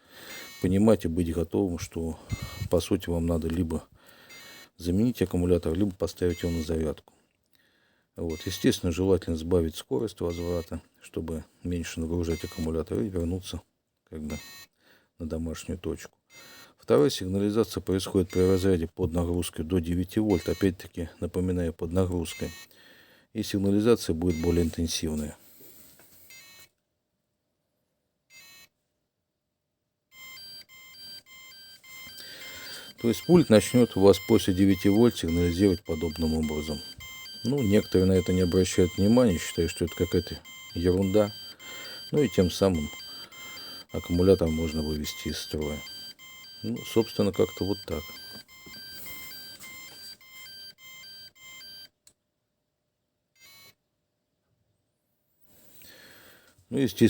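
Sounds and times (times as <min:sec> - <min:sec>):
remote control alarm beeps: 0:00.3 - 0:00.7, 0:02.2 - 0:02.9, 0:04.3 - 0:04.7, 0:06.3 - 0:06.7, 0:08.3 - 0:08.6, 0:10.3 - 0:10.7, 0:12.3 - 0:12.7, 0:18.2 - 0:18.7, 0:20.3 - 0:20.7, 0:24.3 - 0:24.8, 0:30.1 - 0:52.0.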